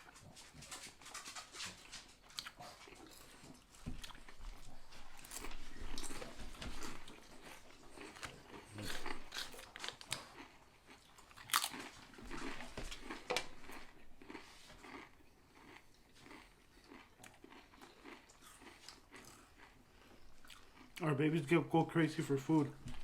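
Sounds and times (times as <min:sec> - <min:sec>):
person chewing food: 0:00.0 - 0:21.6, 0:22.2 - 0:23.0.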